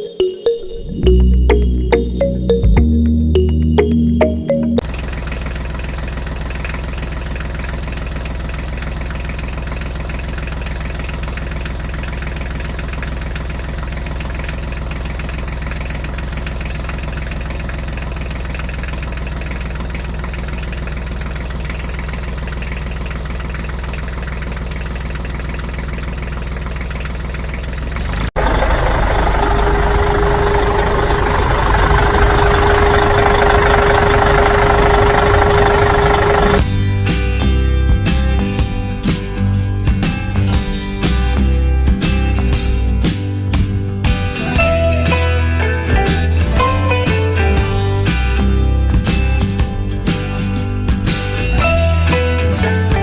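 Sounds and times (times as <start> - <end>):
loud engine with whine: 4.8 - 36.8
engine idling: 4.8 - 53.0.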